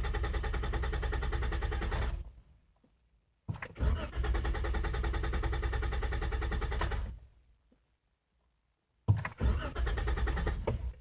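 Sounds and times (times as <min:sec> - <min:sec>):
starter cranking engine: 0:00.0 - 0:02.2, 0:03.7 - 0:07.0, 0:09.4 - 0:10.7.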